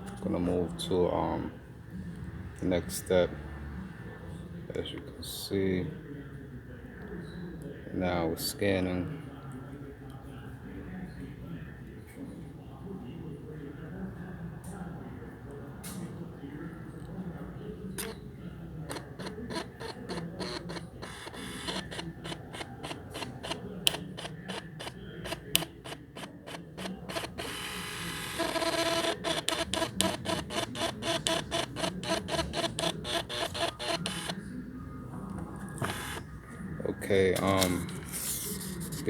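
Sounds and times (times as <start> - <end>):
small printer clicking and whirring: 18.0 - 18.2, 18.9 - 34.4, 35.2 - 36.4.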